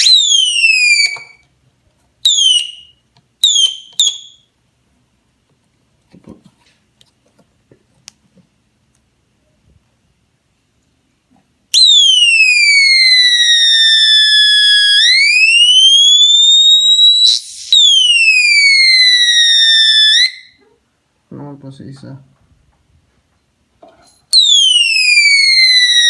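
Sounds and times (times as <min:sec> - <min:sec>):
electronic siren wailing: 0:11.8 - 0:20.6.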